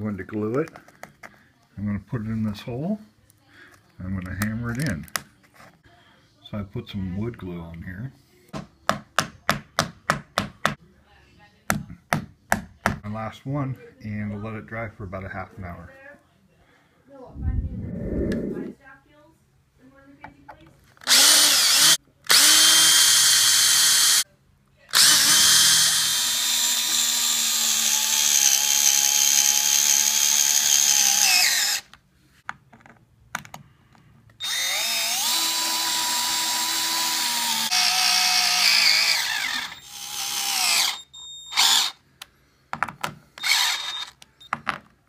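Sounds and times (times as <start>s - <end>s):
electric drill driving screws: 21.0s - 24.2s, 24.9s - 31.9s, 34.4s - 42.0s, 43.4s - 44.2s.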